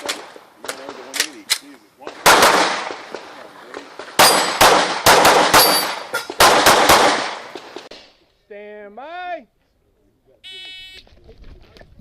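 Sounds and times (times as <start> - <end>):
pistol shots: 2.1 - 3.3, 4.0 - 8.0.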